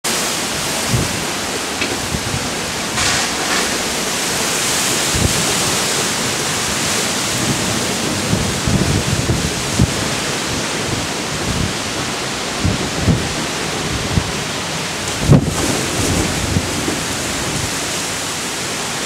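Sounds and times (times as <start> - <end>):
wind buffeting microphone: 0.4 - 18.7
wind rushing: 0.5 - 12.0.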